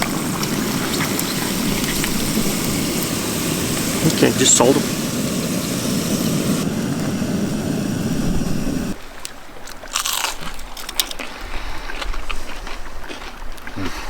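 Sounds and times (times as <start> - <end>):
low rushing noise: 0.0 - 9.0
crunchy chips being chewed: 9.9 - 14.0.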